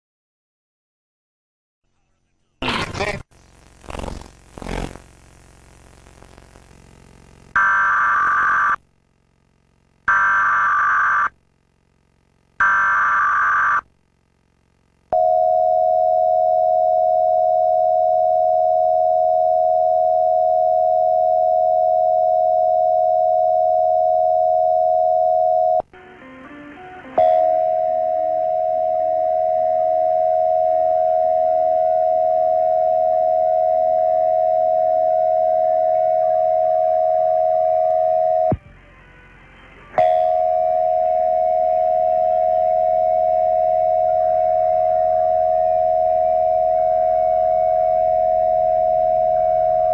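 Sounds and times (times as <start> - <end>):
buzzy data bursts: 3.0 - 6.5
steady attention tone: 15.1 - 38.7, 39.4 - 49.9.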